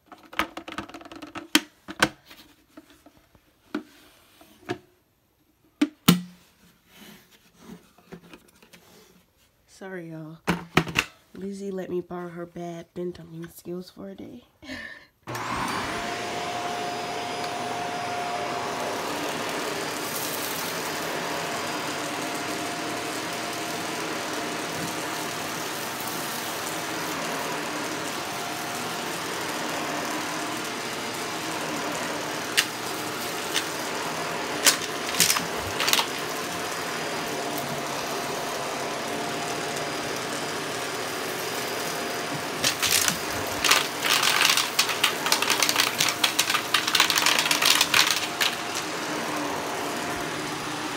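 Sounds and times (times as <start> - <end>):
vacuum cleaner running: 15.2 - 50.9.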